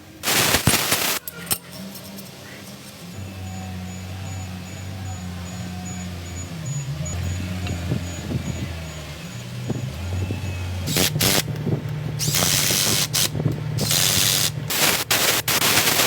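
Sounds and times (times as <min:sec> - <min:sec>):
pneumatic impact wrench rattling: 0:00.2 - 0:02.9, 0:10.9 - 0:11.6, 0:12.2 - 0:16.0
background music with bass: 0:01.3 - 0:14.8.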